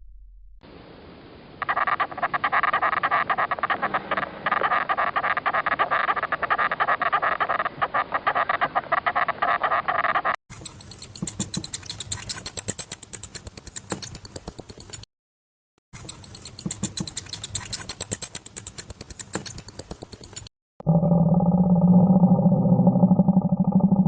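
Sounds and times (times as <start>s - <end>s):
animal rapid pulsing calls: 1.6s - 13.4s
fast rhythmic clicking: 4.5s - 15.0s, 16.0s - 20.5s.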